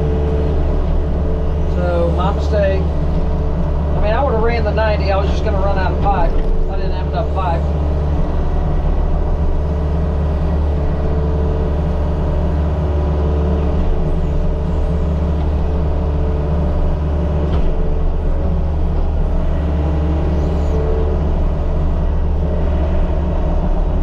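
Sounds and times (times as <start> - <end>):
diesel excavator engine running: 0.0 - 24.0.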